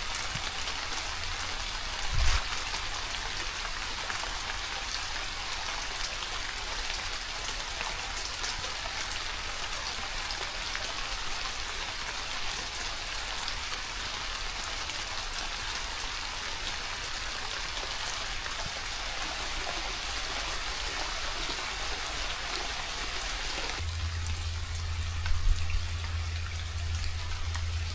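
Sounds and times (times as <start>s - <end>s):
steady rain falling: 0.0s - 27.9s
low steady hum: 18.2s - 27.9s.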